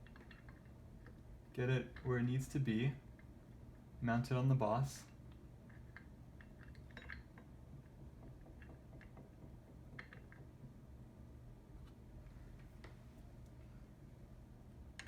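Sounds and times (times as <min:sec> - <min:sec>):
metal clicks and clinks: 0:05.9 - 0:07.4.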